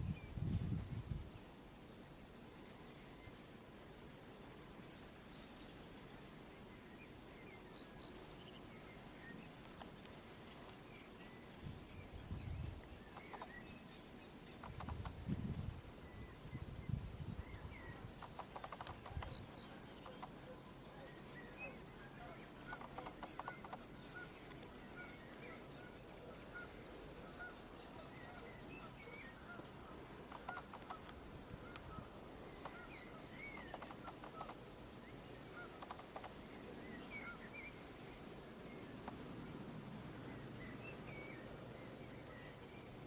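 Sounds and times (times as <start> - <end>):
background hiss: 0.0 - 43.0
small birds chirping: 7.0 - 39.7.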